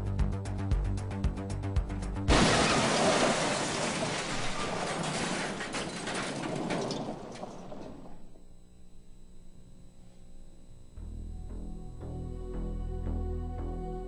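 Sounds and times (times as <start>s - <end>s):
debris rattling and scattering: 2.3s - 8.4s
truck crash smash: 2.3s - 8.4s.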